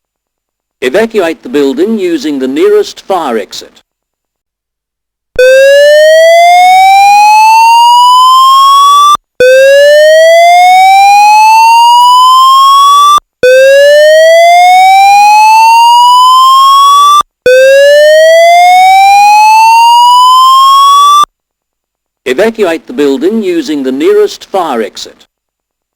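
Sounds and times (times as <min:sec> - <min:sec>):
fire alarm whoop tone: 0:05.4 - 0:21.3.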